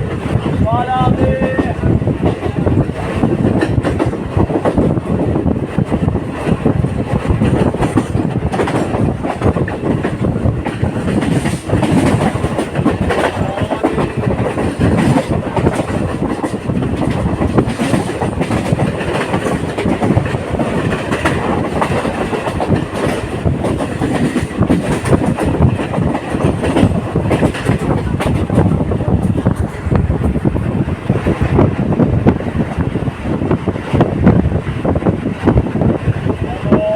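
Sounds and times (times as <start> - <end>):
train wheels clattering over rails: 0.0 - 36.9.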